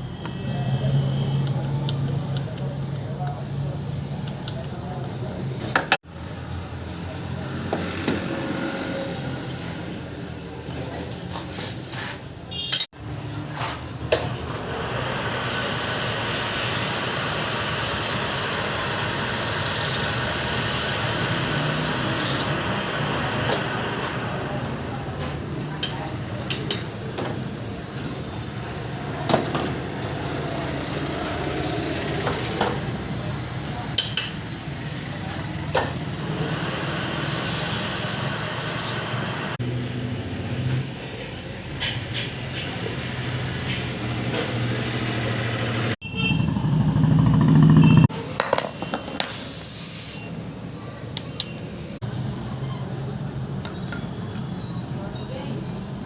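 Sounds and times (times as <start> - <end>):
metal parts and tools clinking: 26.5 - 27.0.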